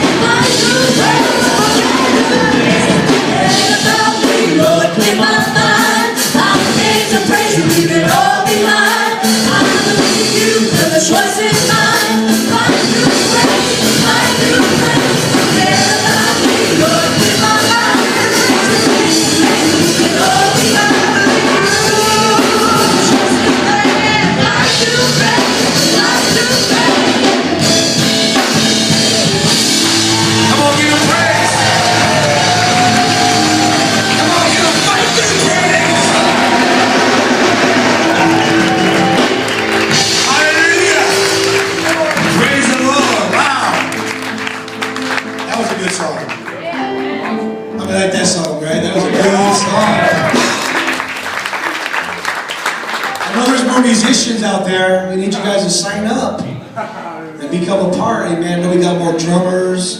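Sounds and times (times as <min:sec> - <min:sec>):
voices singing: 0:00.0 - 0:27.7, 0:29.3 - 0:43.6
drums: 0:00.0 - 0:46.1, 0:47.9 - 0:56.8
keyboard: 0:00.0 - 0:59.9.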